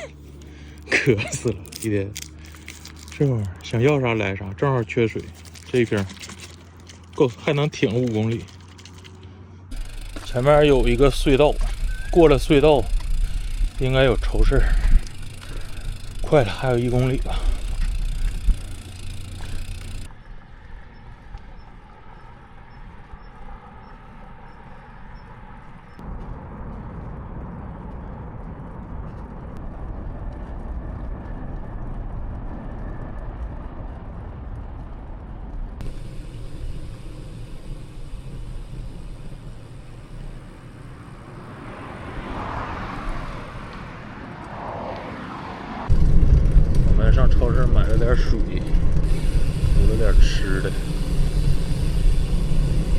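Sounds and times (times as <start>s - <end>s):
traffic going by: 0.0s - 30.1s, 35.1s - 52.9s
vehicle passing: 8.9s - 27.8s, 35.8s - 52.9s
wind rumbling on microphone: 9.6s - 52.9s.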